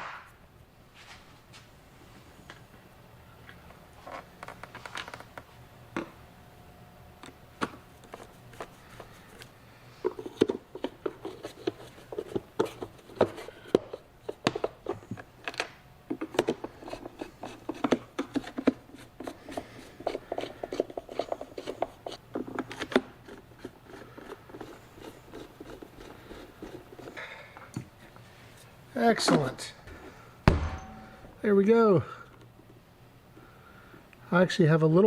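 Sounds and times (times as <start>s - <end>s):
rubbing and scraping: 8.0s - 15.0s, 16.6s - 22.5s.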